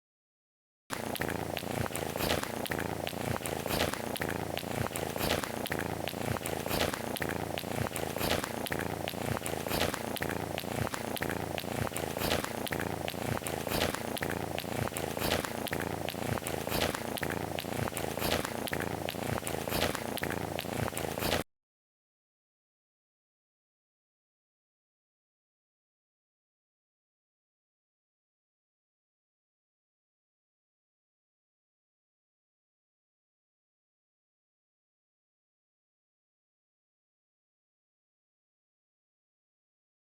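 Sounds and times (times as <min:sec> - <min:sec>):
cat purring: 0:01.0 - 0:21.4.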